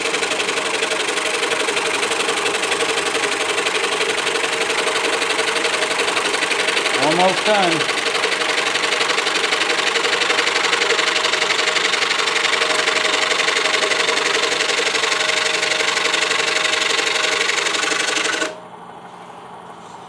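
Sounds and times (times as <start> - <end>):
scroll saw cutting wood: 0.0 - 18.6.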